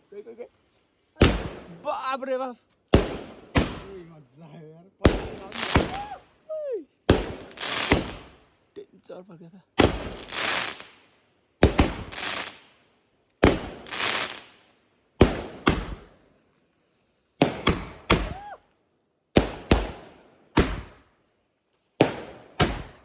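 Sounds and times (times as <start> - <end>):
fireworks banging and crackling: 1.2 - 2.0, 2.9 - 4.1, 5.0 - 6.2, 7.1 - 8.4, 9.8 - 11.0, 11.6 - 12.7, 13.4 - 14.6, 15.2 - 16.2, 17.4 - 18.5, 19.4 - 21.1, 22.0 - 23.0.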